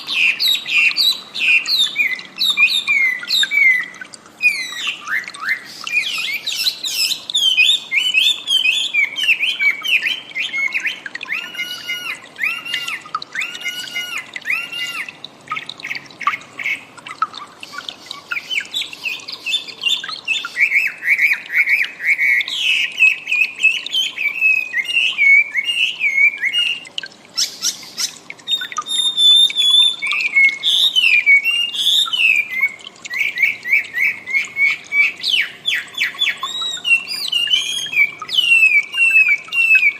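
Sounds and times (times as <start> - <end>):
bird singing chirps and whistles: 0.0 - 16.9, 17.6 - 39.9.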